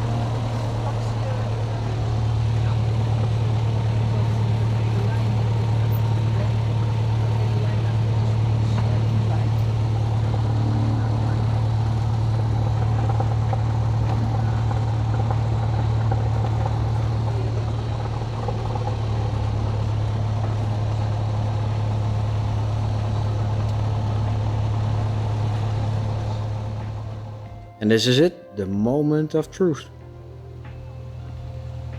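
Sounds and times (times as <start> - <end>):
propeller plane engine droning: 0.0 - 28.7, 29.4 - 31.9.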